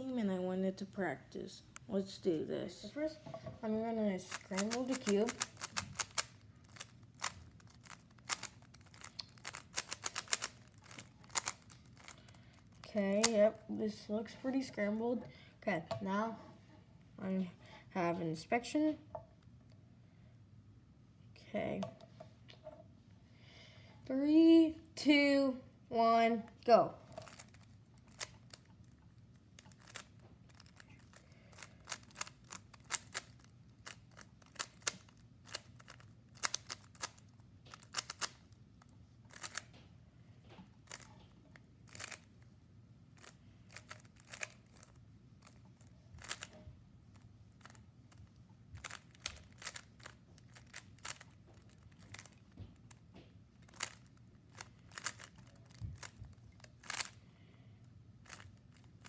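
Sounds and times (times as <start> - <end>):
plastic puzzle cube clicks: 4.4 - 12.3, 27.2 - 28.7, 29.6 - 38.4, 39.3 - 39.7, 46.2 - 46.6, 48.8 - 52.4, 53.7 - 57.2.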